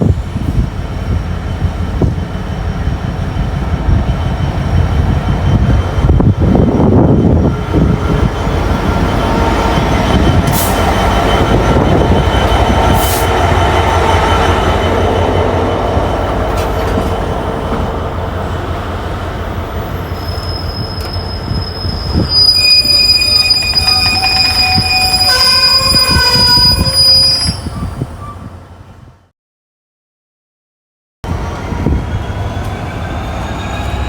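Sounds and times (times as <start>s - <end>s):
train rolling on rails: 0.0s - 29.2s, 31.3s - 34.0s
train wheel squeal: 1.4s - 15.4s, 19.8s - 28.6s, 31.9s - 34.0s.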